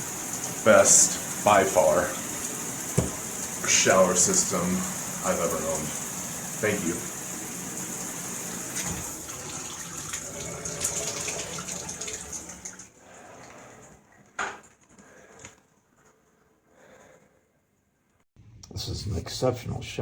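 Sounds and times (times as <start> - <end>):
shower spray hissing: 0.0 - 9.3
short knock: 3.0 - 3.2.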